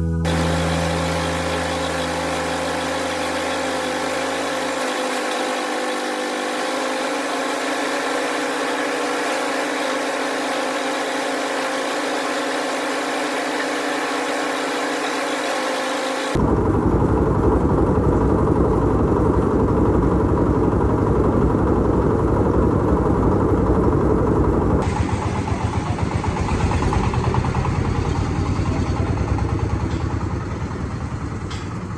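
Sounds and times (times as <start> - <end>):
lighter engine sound: 0.0 - 25.6
engine running with rapid throb: 0.0 - 31.9.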